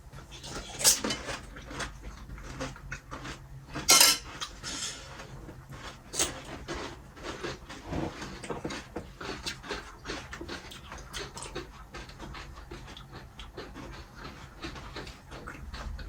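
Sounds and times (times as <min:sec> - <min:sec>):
utensils and dishes clinking: 0:03.9 - 0:05.0.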